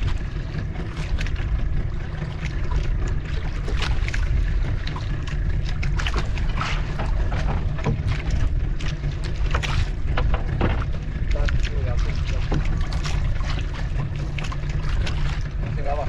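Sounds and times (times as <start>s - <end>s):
water splashes: 0.0s - 16.0s
short knocks: 6.7s - 8.4s, 9.5s - 11.1s.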